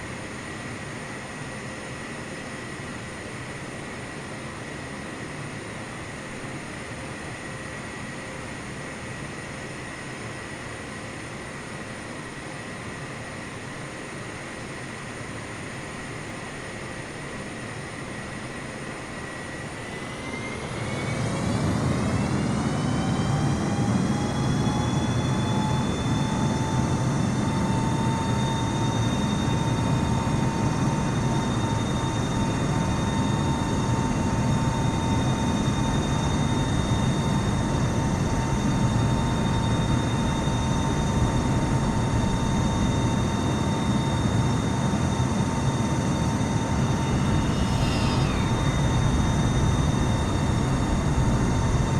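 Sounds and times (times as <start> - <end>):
jet engines spooling up: 17.6 - 34.0, 39.7 - 51.9.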